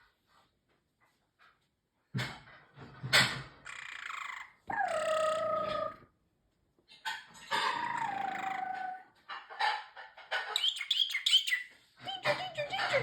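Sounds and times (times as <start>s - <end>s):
high bird chirps: 3.7s - 6.0s, 10.6s - 12.9s
parrotlet calling: 3.7s - 6.0s, 7.5s - 9.0s, 10.5s - 13.0s.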